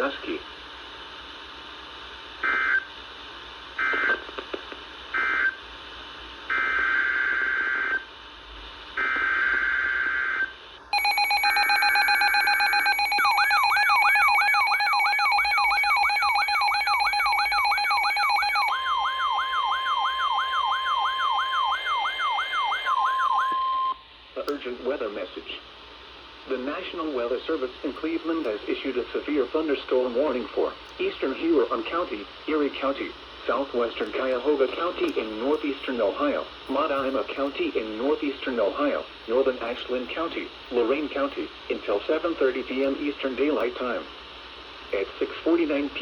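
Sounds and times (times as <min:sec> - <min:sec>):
data tone bursts: 0:11.0 - 0:19.7
warbling electronic alarm: 0:11.0 - 0:24.0.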